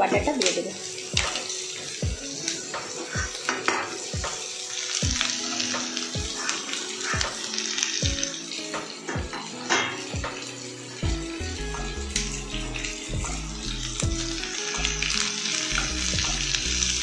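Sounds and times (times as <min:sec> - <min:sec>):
background music with steady beat: 0:00.0 - 0:17.0
onions sizzling in a frying pan: 0:00.0 - 0:17.0.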